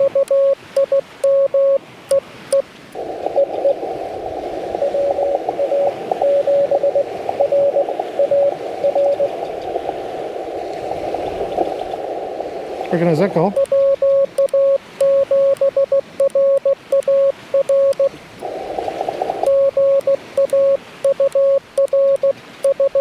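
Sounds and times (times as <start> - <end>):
weak morse code reply: 0.0 - 2.6, 4.8 - 9.3, 12.8 - 18.2, 19.3 - 23.0
morse code keyed tone: 0.0 - 2.7, 4.8 - 9.3, 13.5 - 18.2, 19.3 - 23.0
radio receiver hiss: 2.5 - 23.0.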